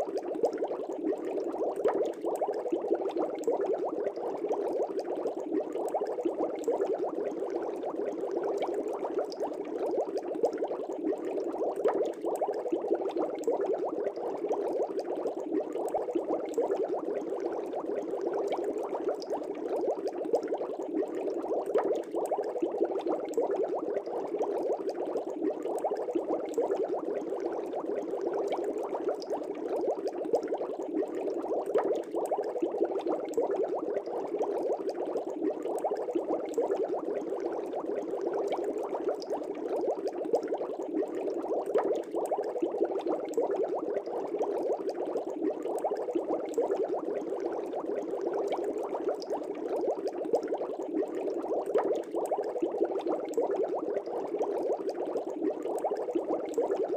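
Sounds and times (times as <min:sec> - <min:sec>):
aquarium air bubbling: 0:00.0 - 0:56.9.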